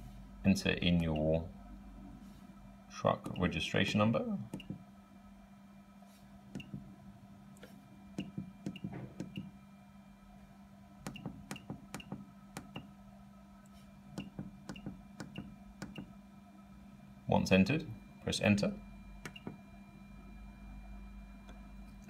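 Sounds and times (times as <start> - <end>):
steady low hum: 0.0 - 22.0
keypad clicks with beeps: 8.2 - 9.5, 11.1 - 12.9, 14.2 - 16.1, 19.2 - 19.6.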